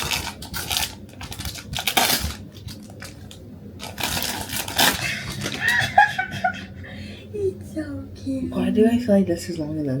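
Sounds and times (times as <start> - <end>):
packaging rustling and crackling: 0.0 - 5.7.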